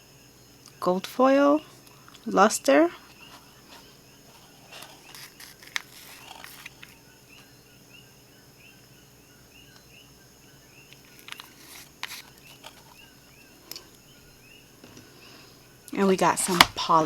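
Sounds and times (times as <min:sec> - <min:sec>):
small items clicking and tapping: 0:04.4 - 0:07.0, 0:10.9 - 0:13.0.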